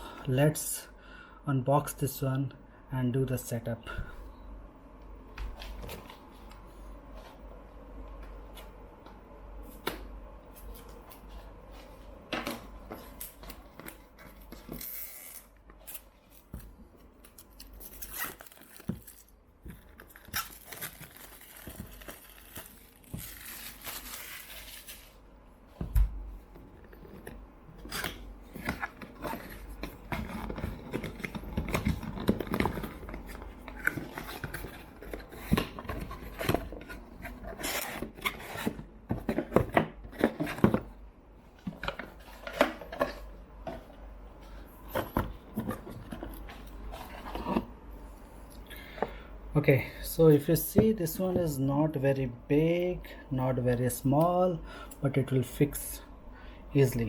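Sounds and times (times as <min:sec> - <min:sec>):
cardboard and plastic rustling: 0:15.8 - 0:25.2, 0:25.8 - 0:47.8.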